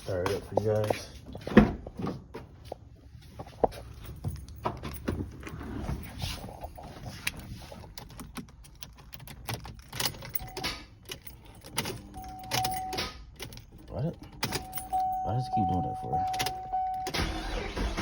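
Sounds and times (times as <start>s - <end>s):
car keys jangling: 3.4s - 17.9s
short beep: 14.8s - 17.2s.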